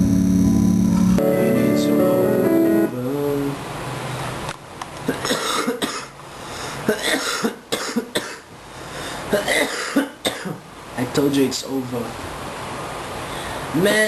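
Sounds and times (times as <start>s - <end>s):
man coughing: 5.1s - 6.2s, 6.9s - 8.5s, 9.3s - 10.6s.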